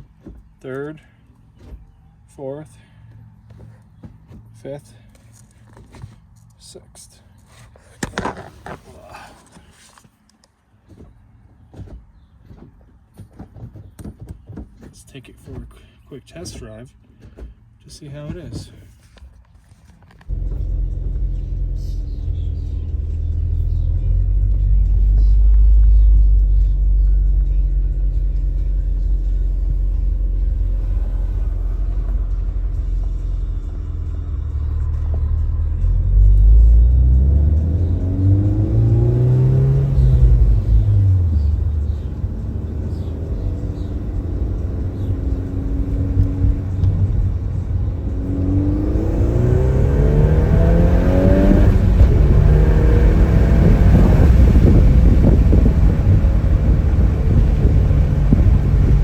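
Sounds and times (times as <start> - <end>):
road rumble: 0.0 - 59.0
car engine accelerating: 20.3 - 59.0.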